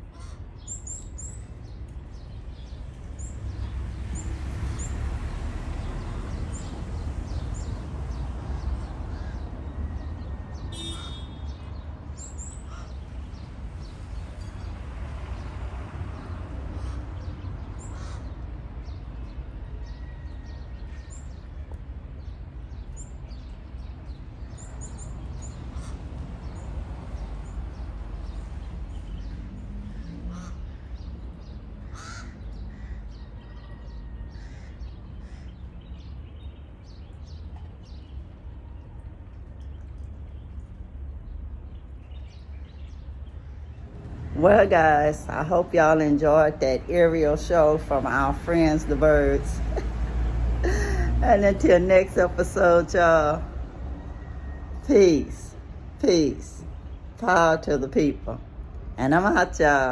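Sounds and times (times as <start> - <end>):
crows cawing: 0.1 - 0.4, 10.8 - 11.4, 12.7 - 13.0, 17.8 - 18.4, 25.7 - 26.0, 29.9 - 31.1, 31.8 - 35.6.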